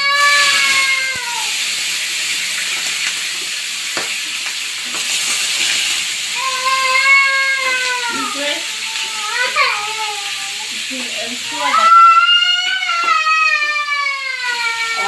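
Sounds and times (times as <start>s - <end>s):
long pitched wail: 0.0s - 1.5s, 11.6s - 15.0s
meat sizzling in hot oil: 0.0s - 15.0s.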